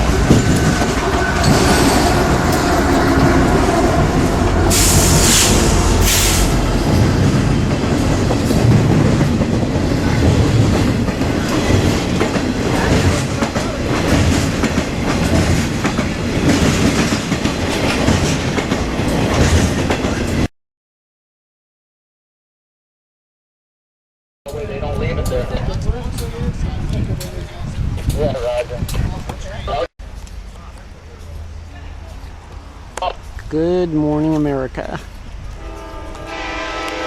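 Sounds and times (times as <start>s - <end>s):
train wheels clattering on rails: 0.0s - 20.5s
short hisses: 4.7s - 6.7s.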